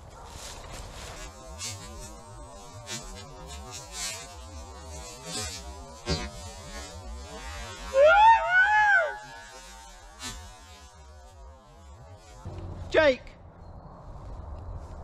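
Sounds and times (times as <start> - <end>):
low wavering hum: 9.2 - 15.0.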